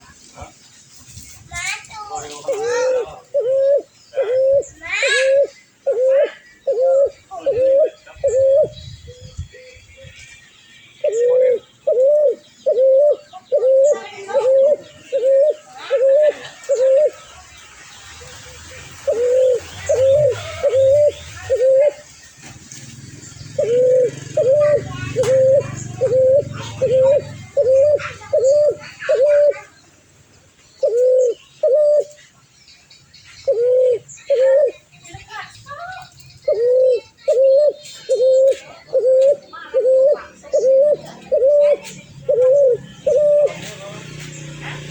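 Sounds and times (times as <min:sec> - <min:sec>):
bird calling: 0:01.6 - 0:44.9.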